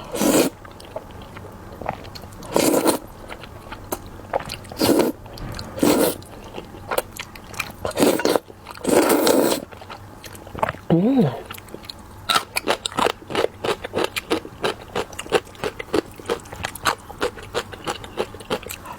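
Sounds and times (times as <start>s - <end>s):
person chewing food: 0.0s - 18.9s.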